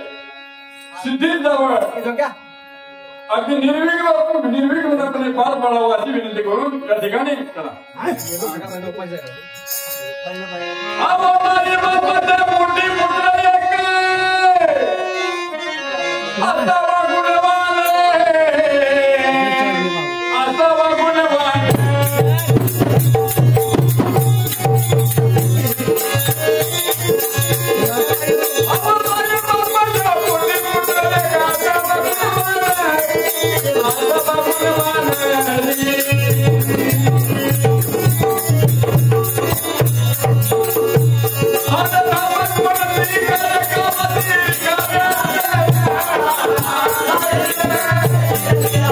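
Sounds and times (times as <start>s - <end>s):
harmonium: 0.0s - 48.9s
jingling percussion: 8.0s - 10.5s, 21.5s - 48.9s
man singing: 10.8s - 48.9s
fast hand drum rhythm: 21.6s - 48.9s.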